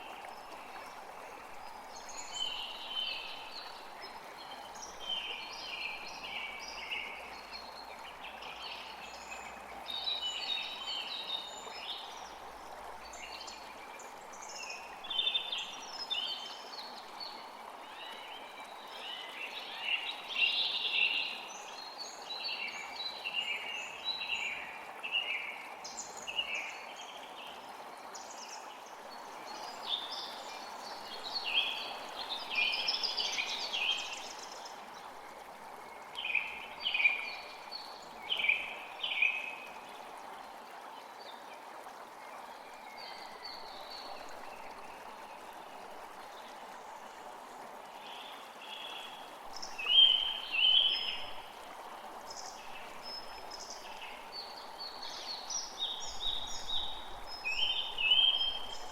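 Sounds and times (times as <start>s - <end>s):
creek rushing: 0.0s - 58.9s
songbirds chirping: 41.0s - 58.9s.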